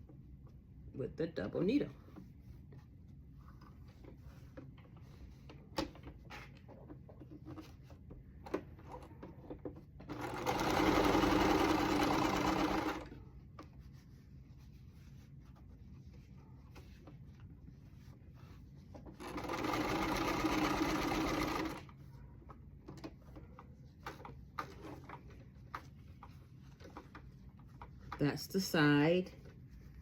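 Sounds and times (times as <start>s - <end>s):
sewing machine stitching: 10.0s - 13.1s, 19.2s - 21.9s.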